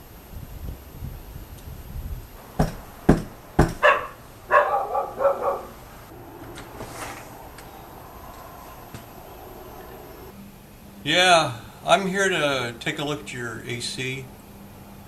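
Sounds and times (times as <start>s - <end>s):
sharp thumps: 2.4s - 10.0s
dog barking: 3.6s - 10.3s.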